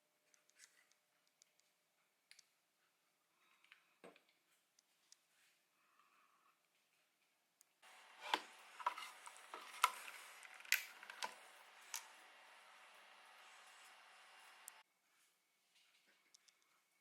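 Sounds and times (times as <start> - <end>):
plastic parts clicking and tapping: 7.8 - 14.8.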